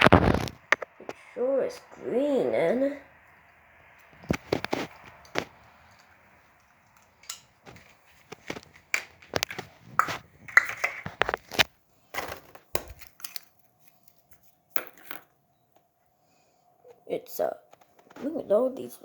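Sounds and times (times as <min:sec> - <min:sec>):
candy wrappers crinkling: 0:04.1 - 0:15.0.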